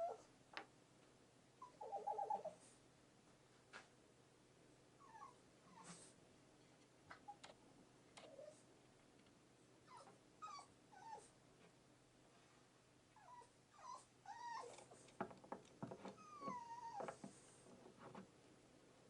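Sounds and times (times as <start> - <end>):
animal whining cries: 16.2 - 17.2.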